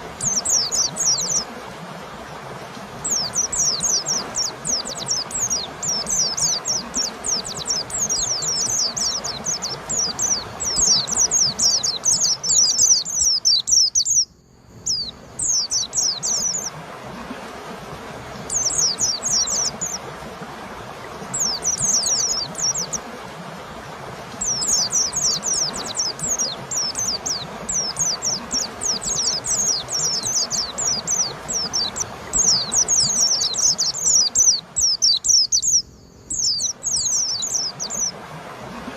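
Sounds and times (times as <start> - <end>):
steady background hiss: 0.0 - 38.9.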